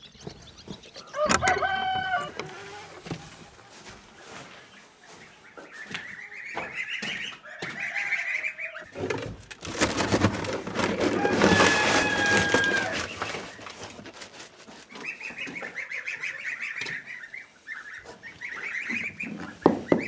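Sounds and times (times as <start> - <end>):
chickens calling: 0.0 - 20.0
rustling noise: 0.2 - 6.2, 9.0 - 15.6.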